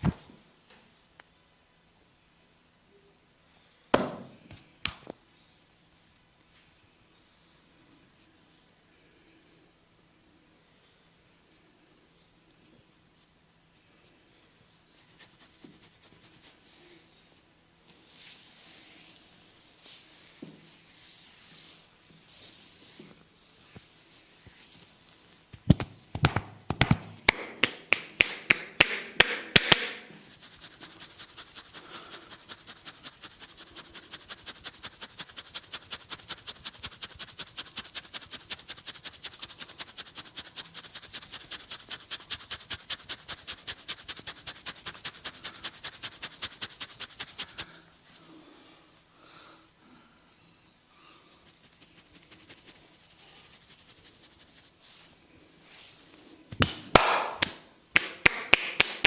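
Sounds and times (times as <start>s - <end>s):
hands smacking a head: 4.0s - 5.2s, 25.5s - 30.8s, 56.5s - 59.0s
light quick hand taps: 25.5s - 30.1s.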